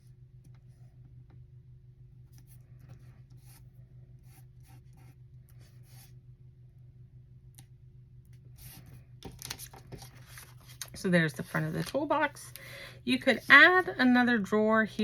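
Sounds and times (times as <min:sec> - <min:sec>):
low electrical hum: 0:00.0 - 0:15.0
cardstock rustling and scraping: 0:08.6 - 0:12.5.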